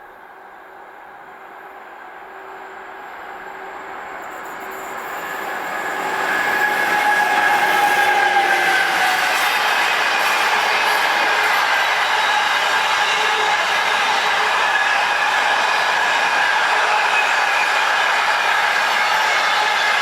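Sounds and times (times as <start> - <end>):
train passing: 0.0 - 20.0.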